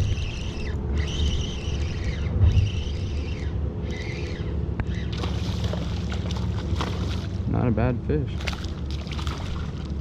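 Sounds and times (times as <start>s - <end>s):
high whirring: 0.0s - 7.1s
wind rumbling on microphone: 0.0s - 7.7s.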